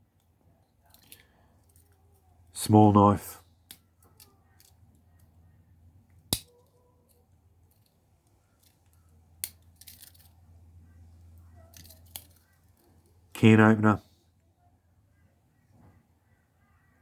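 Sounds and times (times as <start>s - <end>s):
small clicks and handling noise: 0.2s - 2.3s, 3.6s - 5.4s, 6.0s - 10.5s, 11.2s - 13.2s.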